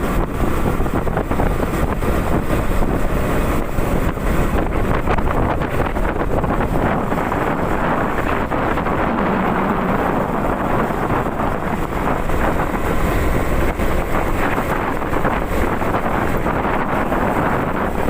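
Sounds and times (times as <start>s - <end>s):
motorcycle engine running: 0.0s - 18.0s
wind rush on microphone: 0.0s - 18.0s.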